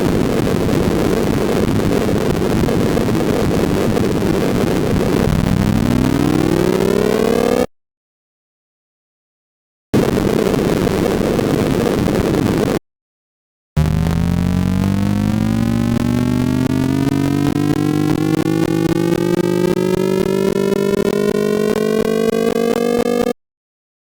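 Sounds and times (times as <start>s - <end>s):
noisy clatter of electronic pulses: 13.8s - 22.6s
buzzy electronic tone rising: 13.8s - 23.3s.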